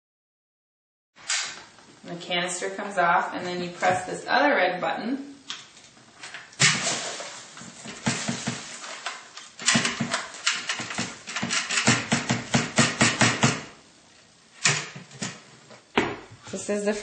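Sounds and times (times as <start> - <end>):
rapid sharp knocks: 10.9 - 13.7.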